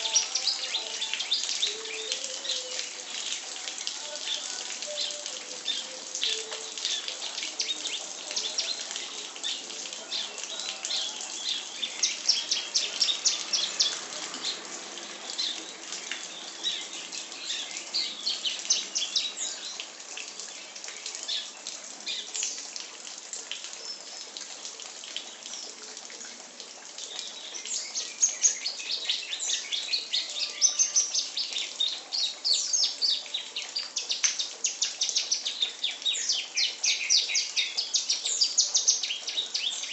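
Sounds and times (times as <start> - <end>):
songbird chirping and trilling: 0.0 - 22.9, 25.1 - 39.9.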